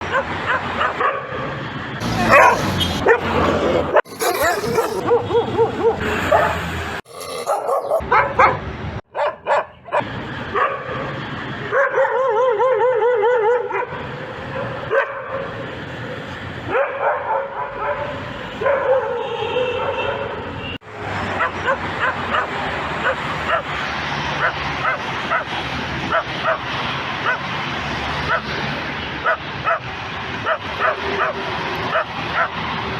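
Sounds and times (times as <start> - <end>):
dog whining: 2.0 - 3.0, 4.1 - 5.0, 7.1 - 8.0
dogs barking and yipping: 2.0 - 3.2, 4.1 - 5.7, 7.2 - 8.5.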